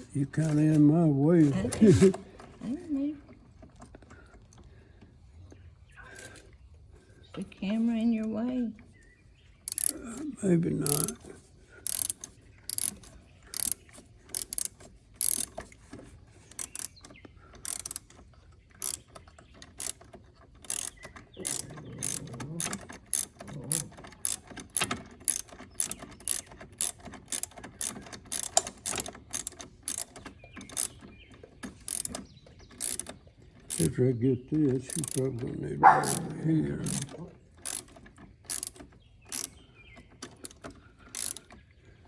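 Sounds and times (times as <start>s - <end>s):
ratchet wrench clicking: 9.6s - 10.1s, 10.8s - 11.2s, 11.8s - 15.8s, 16.5s - 31.0s, 31.7s - 34.0s, 34.9s - 35.3s, 36.0s - 39.6s, 40.3s - 41.5s.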